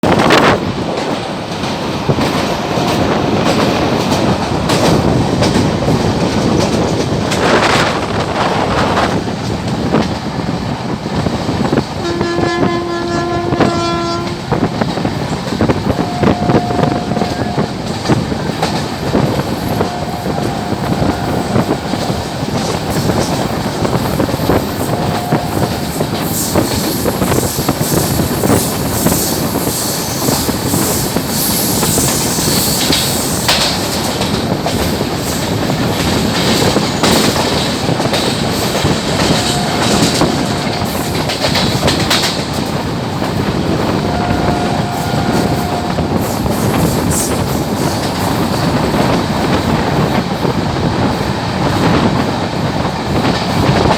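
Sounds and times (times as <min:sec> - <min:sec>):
train rumble: 0:00.0 - 0:53.9
wheels clacking on rails: 0:00.0 - 0:53.9
locomotive horn honks: 0:12.0 - 0:14.7, 0:15.9 - 0:17.8, 0:19.6 - 0:22.2, 0:24.8 - 0:25.9, 0:39.2 - 0:40.9, 0:44.0 - 0:46.3.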